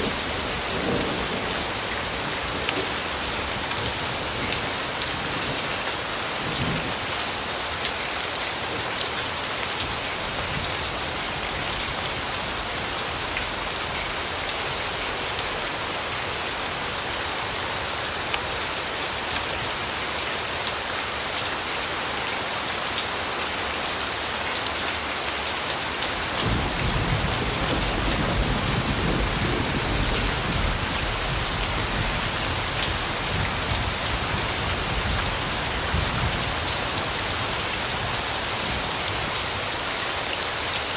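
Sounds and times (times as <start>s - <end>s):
steady rain falling: 0.0s - 40.9s
low rumble of thunder: 26.4s - 36.6s.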